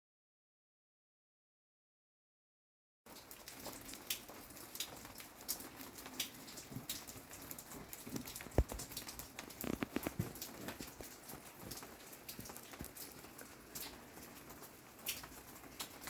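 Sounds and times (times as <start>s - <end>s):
drops patting on surfaces: 8.1s - 8.9s, 9.6s - 13.0s.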